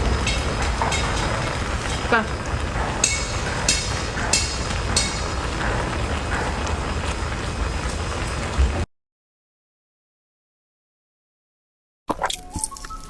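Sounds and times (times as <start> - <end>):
steady low rumble: 0.0 - 8.9
sucking and slurping while eating: 12.1 - 13.0.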